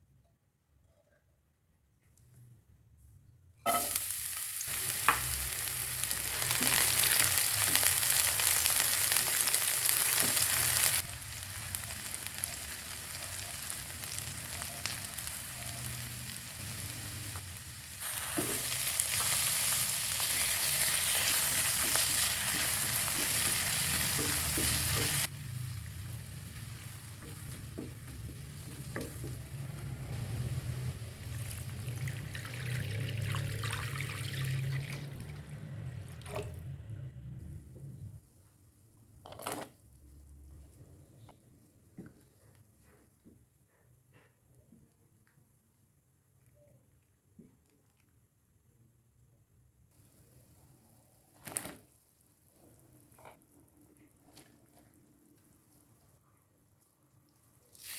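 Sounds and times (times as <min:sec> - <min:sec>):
food sizzling in hot oil: 0:03.7 - 0:32.6.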